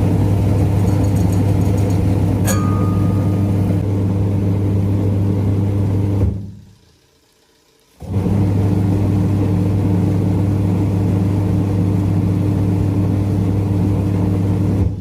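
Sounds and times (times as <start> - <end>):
washing machine motor humming: 0.0 - 15.0.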